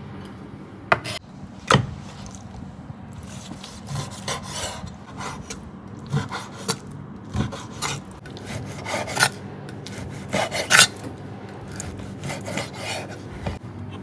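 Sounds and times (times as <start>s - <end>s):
scraping and rubbing objects: 6.2s - 13.6s.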